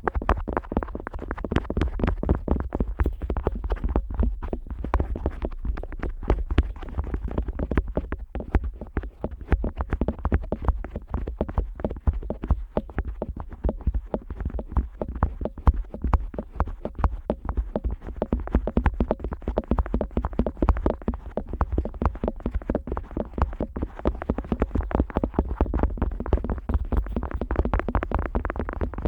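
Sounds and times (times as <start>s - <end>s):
otoscope rubbing on microphone ear: 0.5s - 11.0s, 21.0s - 29.0s.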